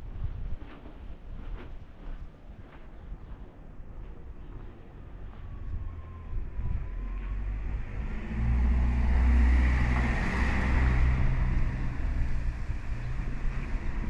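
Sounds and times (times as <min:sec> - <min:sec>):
car driving past: 0:05.9 - 0:14.0.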